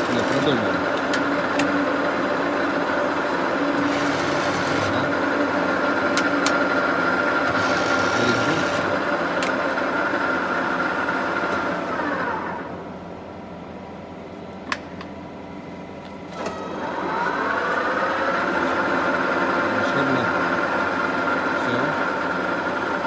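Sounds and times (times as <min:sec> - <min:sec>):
lathe running with whine: 0:00.0 - 0:13.6, 0:16.4 - 0:23.0.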